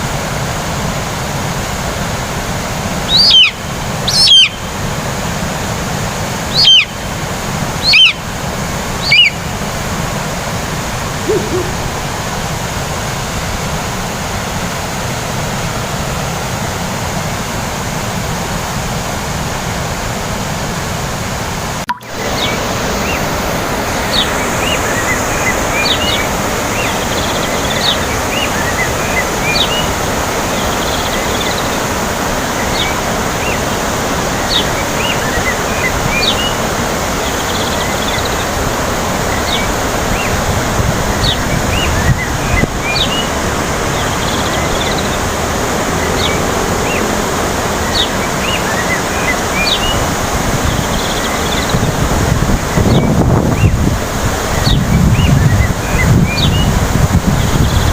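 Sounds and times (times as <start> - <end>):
water rushing: 0.0 - 57.9
wind noise: 6.5 - 13.8, 38.4 - 57.9
short high chirps: 11.2 - 12.0, 21.9 - 22.2.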